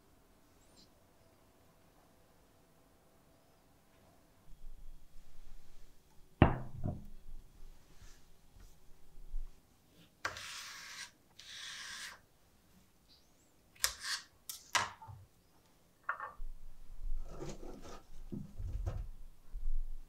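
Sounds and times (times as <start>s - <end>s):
rustling scrapes: 17.2s - 18.8s.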